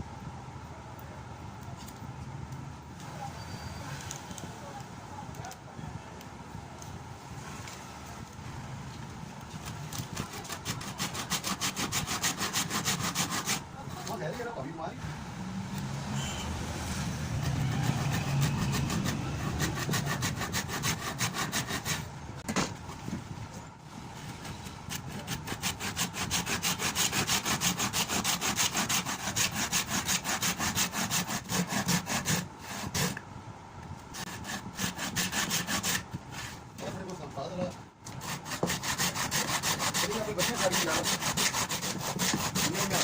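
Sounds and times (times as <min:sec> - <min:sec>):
hand tool rasping wood: 0:09.9 - 0:14.6, 0:17.3 - 0:22.1, 0:24.9 - 0:33.2, 0:34.1 - 0:36.6, 0:38.1 - 0:43.0.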